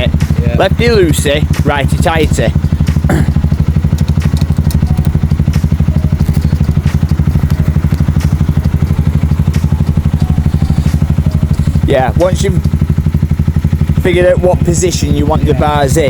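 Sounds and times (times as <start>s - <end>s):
engine idling: 0.0s - 16.0s
light clicks and clatter: 2.7s - 11.9s.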